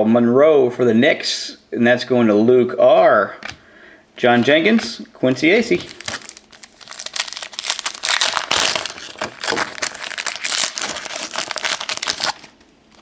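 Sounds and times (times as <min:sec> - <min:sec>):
foil wrapper crinkling: 0:05.8 - 0:13.0.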